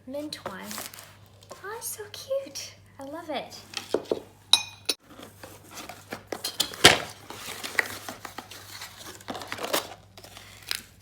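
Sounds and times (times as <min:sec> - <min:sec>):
packaging crinkling and tearing: 0:00.6 - 0:01.6, 0:05.1 - 0:11.0.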